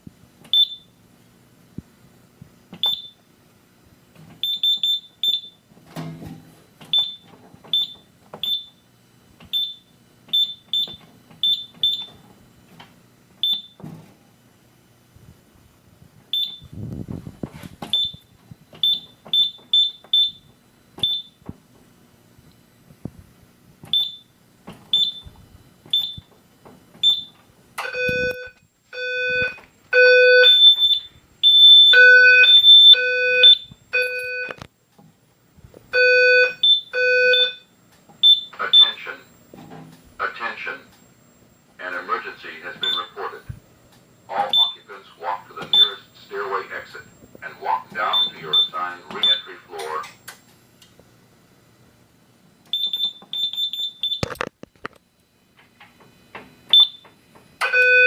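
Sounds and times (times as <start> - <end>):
high keypad beeps: 16.3 - 16.7, 42.8 - 43.2, 44.5 - 44.8, 45.6 - 46.0, 48.1 - 49.5, 52.7 - 54.3
pulsing fire alarm horn: 27.1 - 34.5, 36.0 - 37.6, 57.6 - 58.0.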